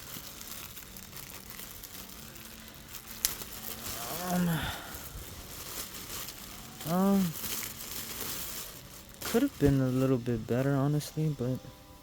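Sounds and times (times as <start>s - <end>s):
packaging rustling and crinkling: 0.0s - 11.5s
person humming: 3.6s - 5.3s.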